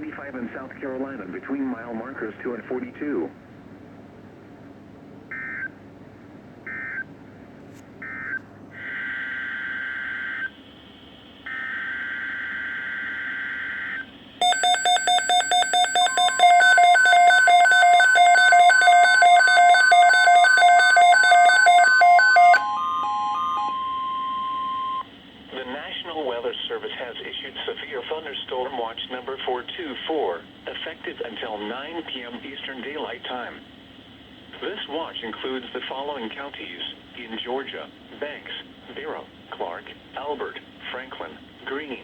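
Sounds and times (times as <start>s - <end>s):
rapid electronic beeps: 14.4s - 25.0s.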